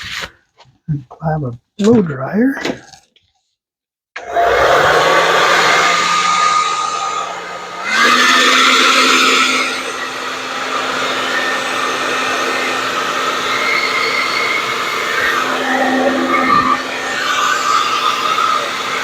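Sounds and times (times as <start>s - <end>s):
blow dryer blowing air: 4.2s - 19.0s.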